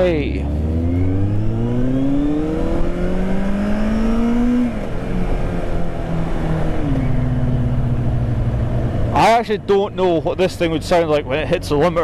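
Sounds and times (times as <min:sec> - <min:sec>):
motorcycle accelerating hard: 0:00.0 - 0:09.2.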